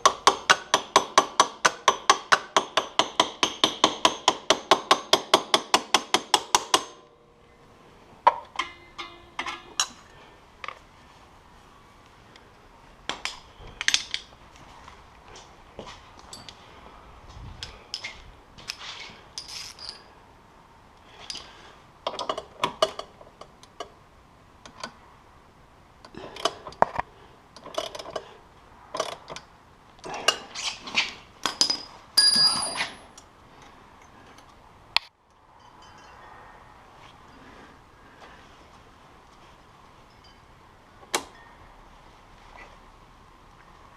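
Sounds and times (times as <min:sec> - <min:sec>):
hand tools clinking and scraping: 0:16.2 - 0:16.8, 0:17.7 - 0:20.2, 0:30.2 - 0:33.2, 0:35.6 - 0:36.4.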